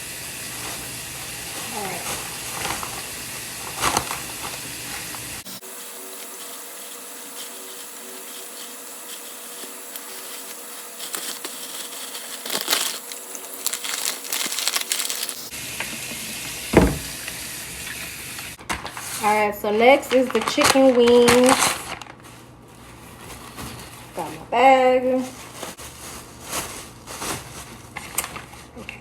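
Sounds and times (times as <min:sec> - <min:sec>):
plastic bags crinkling: 0:00.5 - 0:05.1, 0:06.4 - 0:15.5, 0:18.6 - 0:29.0
tap running: 0:00.6 - 0:18.9.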